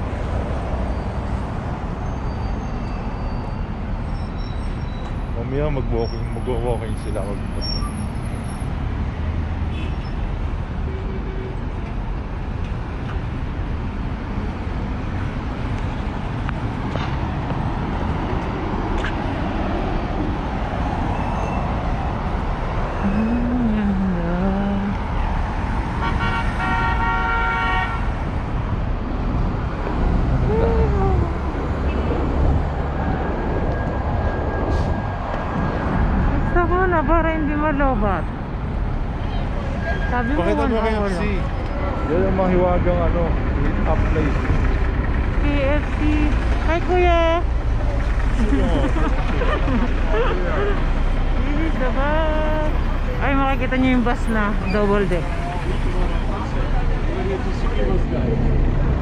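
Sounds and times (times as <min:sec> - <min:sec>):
city road traffic: 0:00.0 - 0:59.0
vehicle horn: 0:26.0 - 0:28.2.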